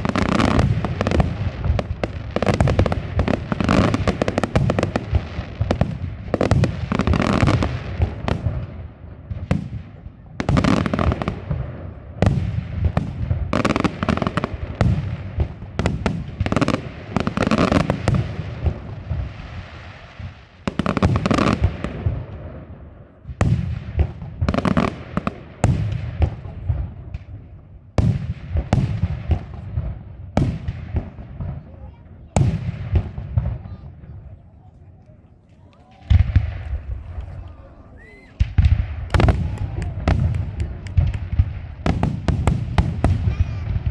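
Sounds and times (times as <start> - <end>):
fireworks bangs and crackle: 0.0 - 43.9
echoing rumble: 35.9 - 43.9.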